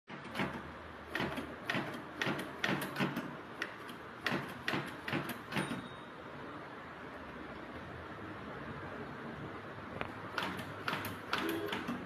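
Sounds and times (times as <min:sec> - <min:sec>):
manual typewriter key strikes: 0:00.1 - 0:05.9, 0:10.4 - 0:12.0.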